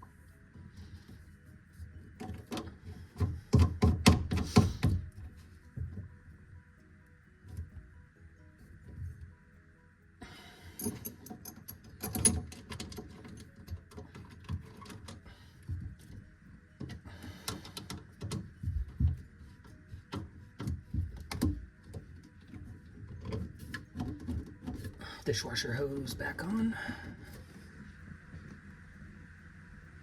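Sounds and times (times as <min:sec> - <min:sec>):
plumbing parts clicking and knocking: 0:02.0 - 0:06.1, 0:10.8 - 0:27.8.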